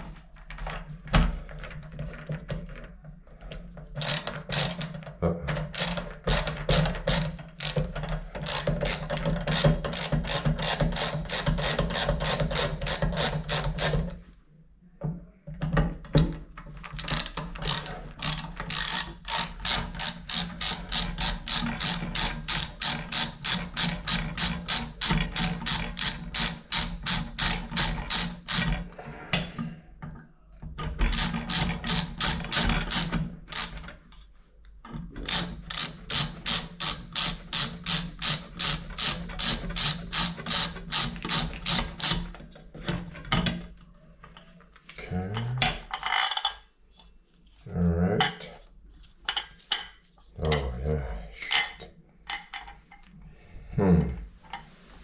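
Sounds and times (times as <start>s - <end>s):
hand ratchet clicking: 4.0s - 5.0s, 5.6s - 14.0s, 16.9s - 28.8s, 31.1s - 33.9s, 35.2s - 42.3s.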